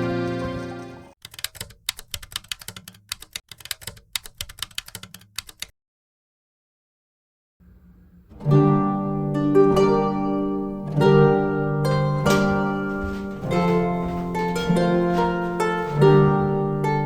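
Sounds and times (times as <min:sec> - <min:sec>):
background music: 0:00.0 - 0:01.1, 0:08.3 - 0:17.0
keyboard typing: 0:01.2 - 0:05.7.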